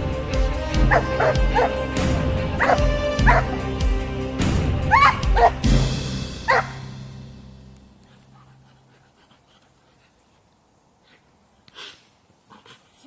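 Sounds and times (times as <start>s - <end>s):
background music: 0.0s - 8.8s
dog yelping: 0.9s - 1.8s, 2.6s - 3.6s, 4.9s - 5.6s, 6.5s - 6.8s.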